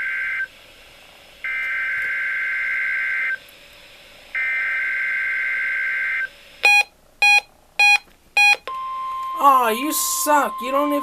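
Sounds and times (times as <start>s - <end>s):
digital data tone bursts: 6.2s - 11.0s.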